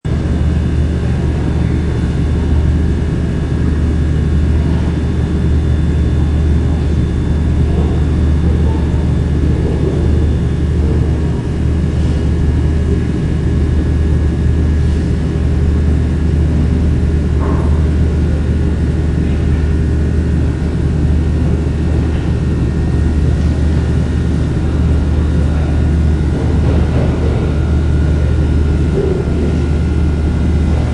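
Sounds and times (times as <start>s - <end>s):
low drone: 0.1s - 30.9s.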